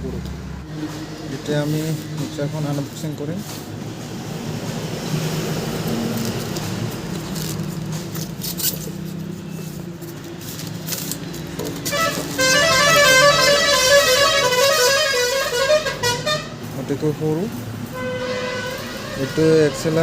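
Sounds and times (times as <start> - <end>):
musical vehicle horn playing tune: 11.8 - 16.7, 17.9 - 20.0.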